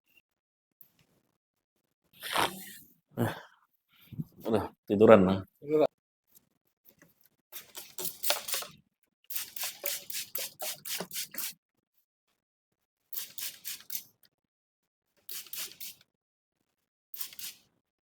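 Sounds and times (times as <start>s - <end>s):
fingers rubbing through hair: 9.4s - 11.6s.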